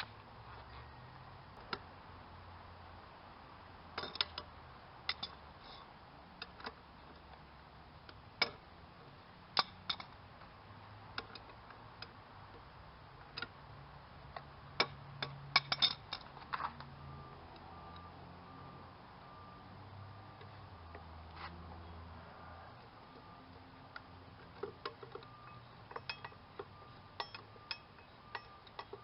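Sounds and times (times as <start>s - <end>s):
metal tools clinking: 14.8s - 16.3s, 24.4s - 29.0s.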